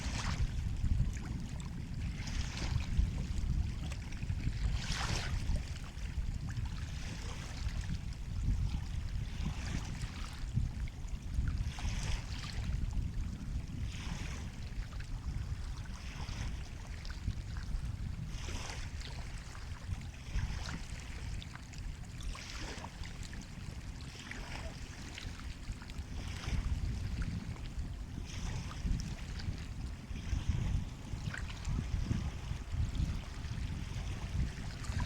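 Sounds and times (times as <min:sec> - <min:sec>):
sea waves washing on shore: 0:18.3 - 0:35.0.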